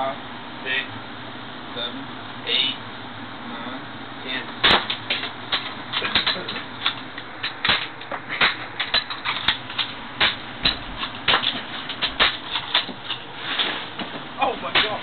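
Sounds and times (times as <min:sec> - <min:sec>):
bb guns firing: 0:04.6 - 0:06.4, 0:07.5 - 0:12.9, 0:14.7 - 0:15.0.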